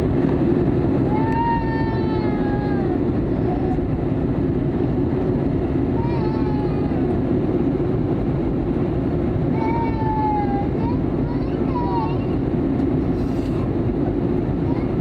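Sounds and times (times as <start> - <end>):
jet engine roar in cabin: 0.0 - 15.0
child wailing: 1.1 - 3.8, 6.0 - 7.1, 9.6 - 12.3.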